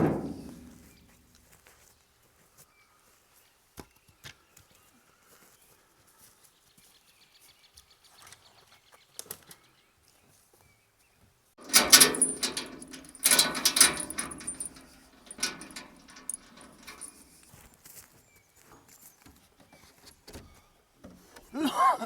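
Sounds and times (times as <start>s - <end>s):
jangling rattling metal: 0.0s - 1.0s, 11.6s - 17.5s.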